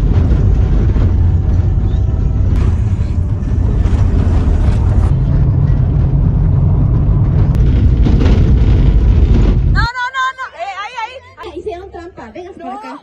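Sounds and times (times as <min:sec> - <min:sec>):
vehicle rumble inside cabin: 0:00.0 - 0:09.8.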